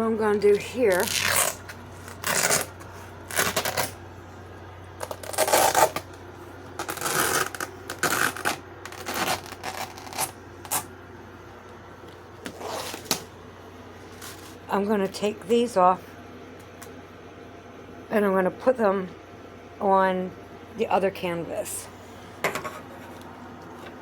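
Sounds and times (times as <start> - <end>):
velcro ripping: 0.9 - 4.0, 5.0 - 6.2, 6.8 - 10.9, 12.4 - 13.3.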